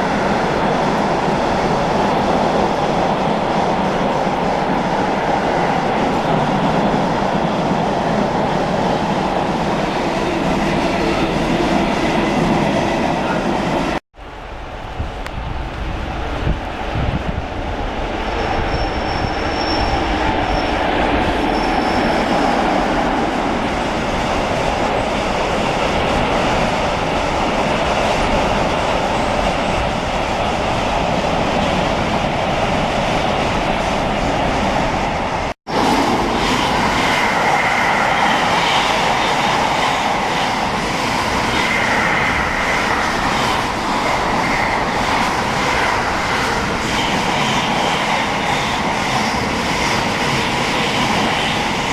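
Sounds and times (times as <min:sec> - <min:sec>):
high wheel squeals: 0:18.2 - 0:22.7.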